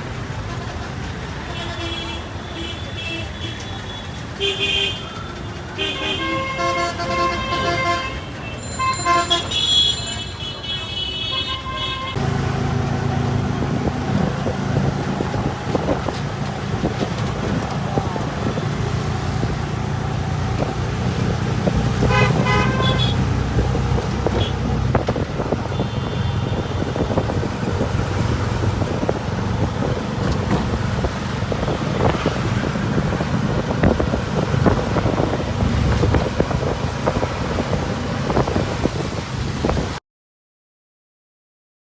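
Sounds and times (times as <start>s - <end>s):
vehicle horns honking: 0.2s - 13.2s, 21.8s - 27.5s
steady engine drone: 12.2s - 25.1s.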